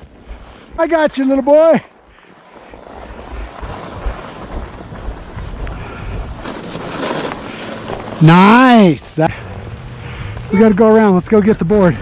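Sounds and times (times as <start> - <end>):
wind buffeting microphone: 2.0 - 8.3.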